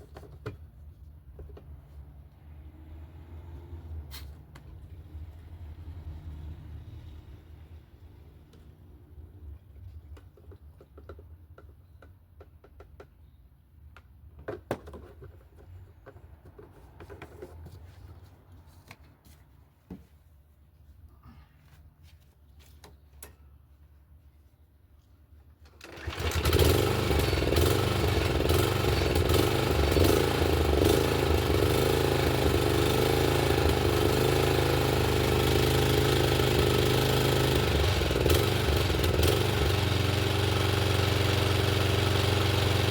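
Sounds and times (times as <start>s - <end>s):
lawn mower engine running: 25.7s - 42.9s.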